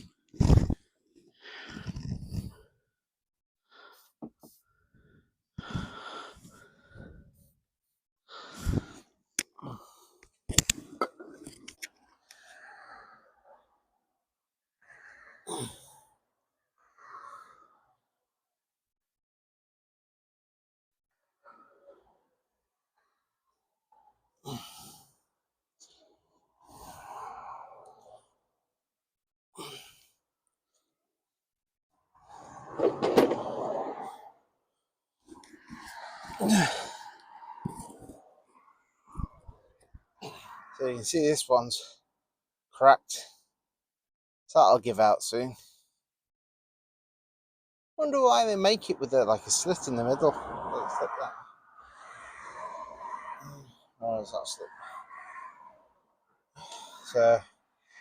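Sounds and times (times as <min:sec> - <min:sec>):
heavy breaths and sighs: 0:00.0 - 0:03.0, 0:03.6 - 0:07.6, 0:08.2 - 0:14.0, 0:14.8 - 0:18.2, 0:23.9 - 0:28.5, 0:29.6 - 0:30.9, 0:35.2 - 0:41.1, 0:48.3 - 0:58.0
person breathing out heavily: 0:04.8 - 0:07.4, 0:08.3 - 0:10.2, 0:35.3 - 0:38.2.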